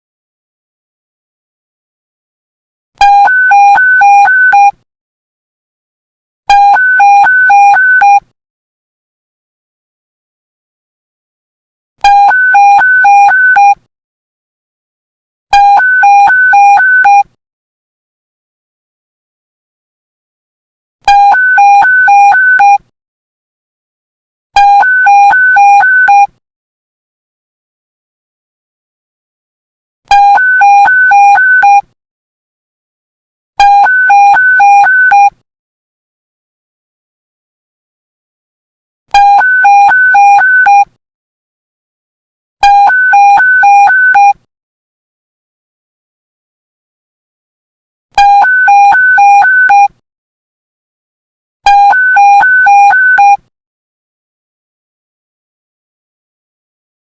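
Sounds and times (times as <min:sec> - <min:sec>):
two-tone electronic beeping: 0:15.5 - 0:17.3, 0:21.1 - 0:22.8, 0:24.6 - 0:26.3, 0:30.1 - 0:31.8, 0:33.6 - 0:35.4, 0:39.1 - 0:40.9, 0:42.6 - 0:44.4, 0:48.2 - 0:49.9, 0:51.7 - 0:53.4.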